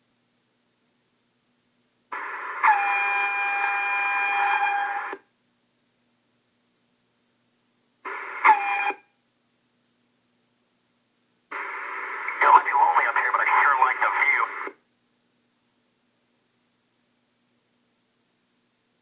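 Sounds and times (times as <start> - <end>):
radio hiss burst: 11.6 - 14.8.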